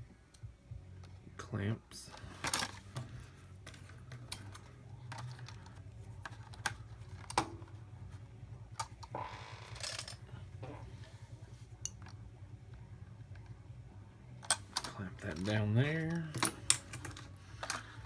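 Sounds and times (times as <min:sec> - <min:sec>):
steady low hum: 0:00.0 - 0:18.0
clips clicking and snapping: 0:02.2 - 0:07.8, 0:14.4 - 0:18.0.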